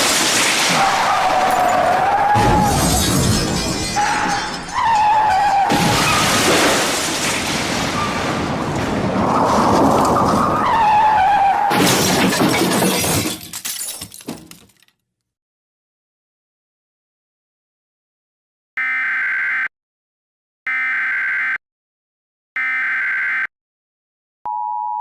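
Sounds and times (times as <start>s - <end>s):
glass shattering: 0.0s - 8.2s, 11.7s - 14.9s
car crash: 0.0s - 14.5s
debris and glass tinkling: 2.8s - 7.6s, 11.9s - 14.9s.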